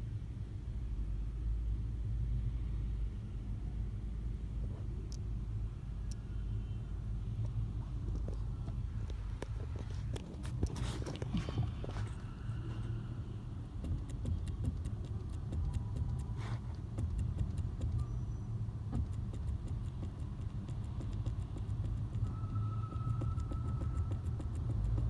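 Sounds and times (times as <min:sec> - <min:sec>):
car engine droning: 0:21.6 - 0:25.0.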